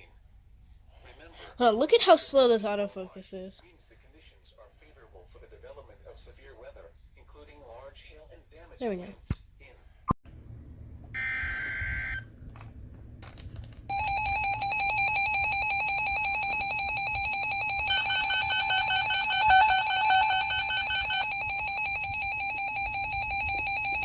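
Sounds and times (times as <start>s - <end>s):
emergency alert tones: 11.2s - 12.3s, 13.9s - 24.0s
shrill alert tone: 11.2s - 12.3s, 13.9s - 24.0s.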